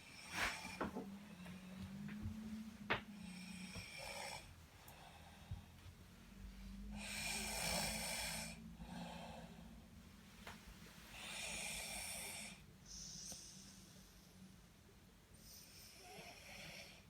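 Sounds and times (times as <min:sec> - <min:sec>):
person snoring: 0:06.9 - 0:09.6.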